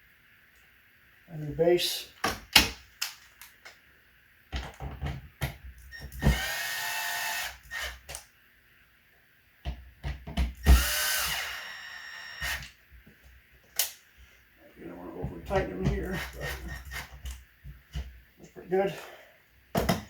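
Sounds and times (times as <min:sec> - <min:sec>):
power drill driving screws: 0:05.9 - 0:08.2, 0:10.6 - 0:12.7, 0:16.0 - 0:17.2.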